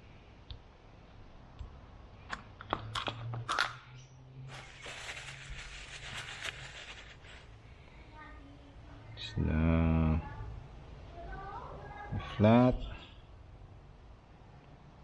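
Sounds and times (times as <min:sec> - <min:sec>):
crinkly rustle: 0:04.5 - 0:07.5.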